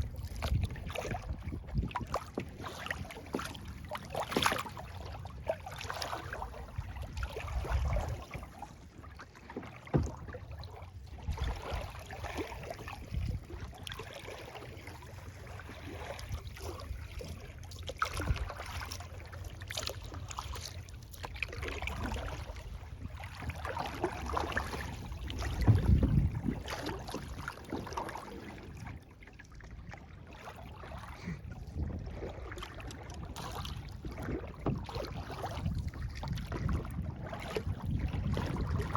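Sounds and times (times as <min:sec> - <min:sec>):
paddle strokes splashing water: 0:00.0 - 0:38.9
water dripping and lapping: 0:00.0 - 0:38.9
low thump: 0:09.8 - 0:10.4, 0:25.5 - 0:26.4.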